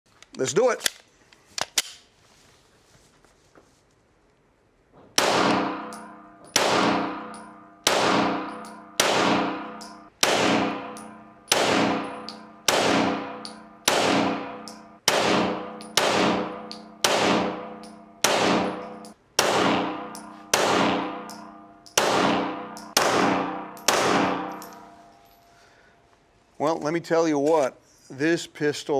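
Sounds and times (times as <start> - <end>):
pistol shots: 5.2 - 24.8
ringing metal clang: 5.4 - 19.2, 19.8 - 25.8.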